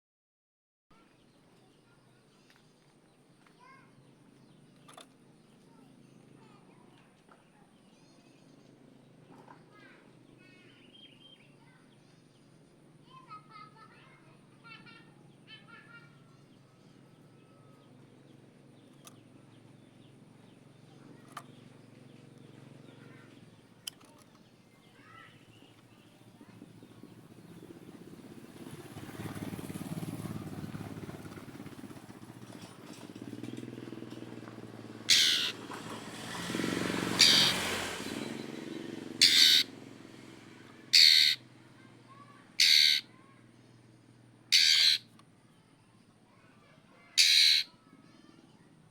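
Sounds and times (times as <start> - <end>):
bird screeching calls: 35.1 - 35.6, 37.0 - 38.3, 39.2 - 39.7, 40.9 - 41.5, 42.5 - 43.2, 44.5 - 45.1, 47.0 - 47.8
faint bird chirps: 35.1 - 35.6, 37.2 - 37.6.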